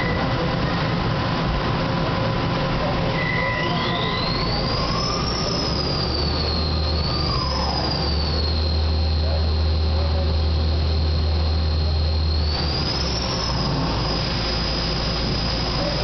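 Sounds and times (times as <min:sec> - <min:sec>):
lathe machine whining: 0:00.0 - 0:16.0
low hum: 0:04.1 - 0:16.0.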